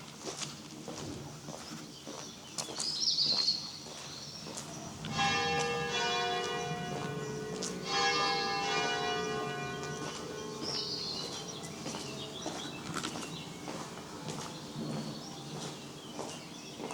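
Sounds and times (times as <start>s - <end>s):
bird chirping: 1.5s - 16.9s
church bell striking: 4.9s - 16.2s.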